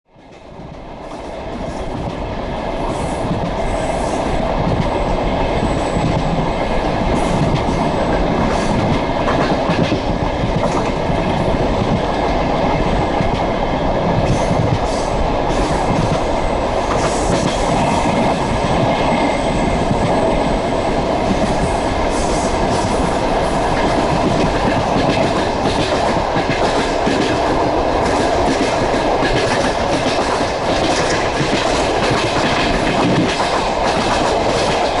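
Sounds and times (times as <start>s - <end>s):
train wheels clattering over rail joints: 21.2s - 35.0s.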